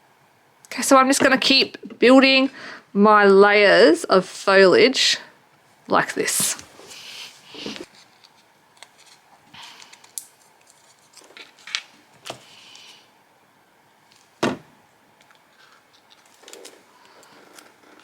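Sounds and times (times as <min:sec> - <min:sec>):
paper rustling: 0:07.6 - 0:13.0.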